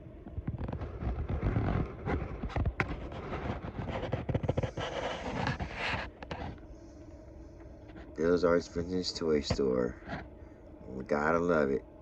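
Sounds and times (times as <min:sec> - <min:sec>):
handling clicks taps and scrapes: 0:02.4 - 0:06.7, 0:09.4 - 0:10.3.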